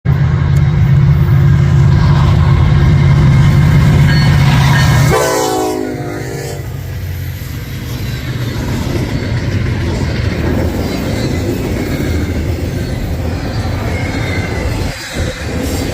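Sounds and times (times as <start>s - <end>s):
diesel locomotive rumble: 0.0s - 15.9s
railcars rolling by: 0.1s - 15.9s
locomotive air horn: 4.5s - 6.8s.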